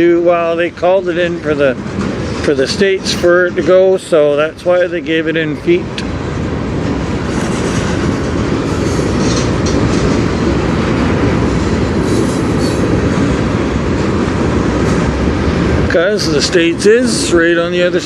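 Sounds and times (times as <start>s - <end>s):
freight train wheels rumbling on rails: 0.0s - 18.0s.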